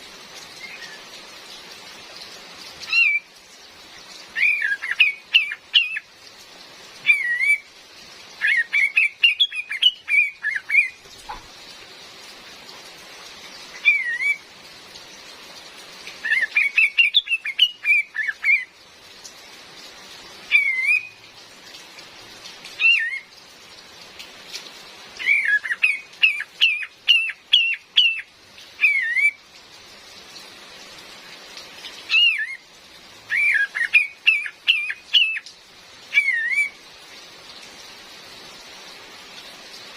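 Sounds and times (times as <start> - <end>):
rain hiss: 0.0 - 39.9
bird chirping: 4.4 - 6.1, 8.4 - 11.4, 13.8 - 14.4, 16.2 - 18.7, 20.5 - 21.2, 25.2 - 29.4, 33.3 - 35.5.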